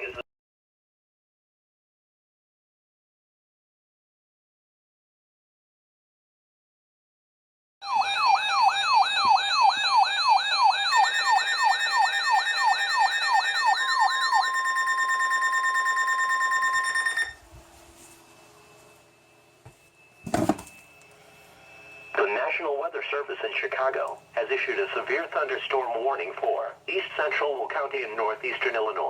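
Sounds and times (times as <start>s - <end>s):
sweeping siren-like alarm tone: 7.8s - 22.8s
high beeps: 9.2s - 17.4s.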